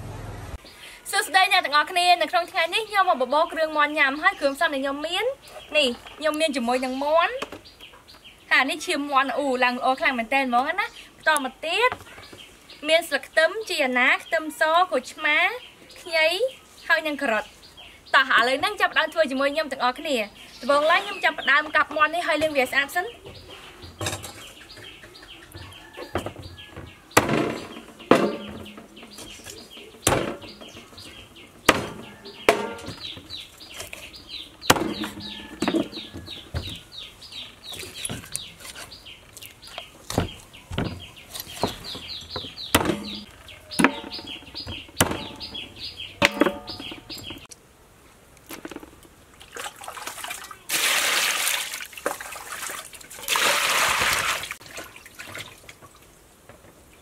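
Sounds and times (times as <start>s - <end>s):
running water: 49.2s - 56.2s.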